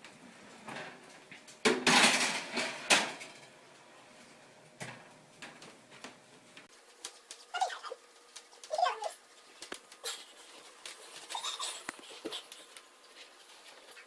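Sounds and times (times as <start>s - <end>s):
metal bakeware clattering: 0.5s - 3.6s
rattling scrape: 1.8s - 3.5s.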